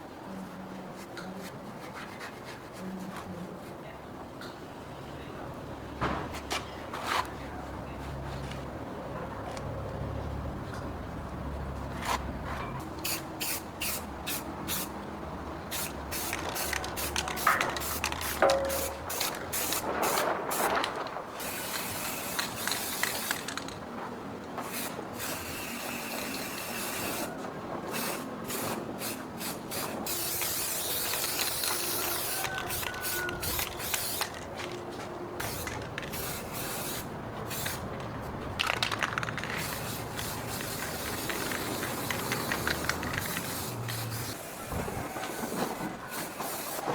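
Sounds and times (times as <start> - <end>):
pressurised spray hissing: 35.4 - 37.8, 39.6 - 44.6.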